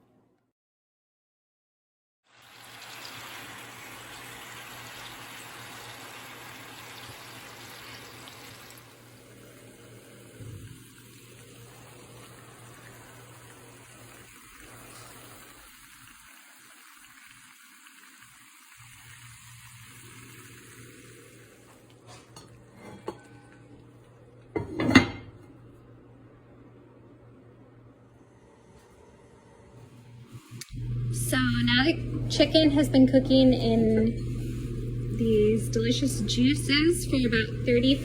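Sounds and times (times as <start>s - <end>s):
chicken sizzling in a pan: 2.3s - 22.4s, 30.2s - 38.0s
cookware clattering: 22.3s - 23.6s, 24.6s - 25.5s
cookware clinking: 22.4s - 23.6s, 24.6s - 25.4s.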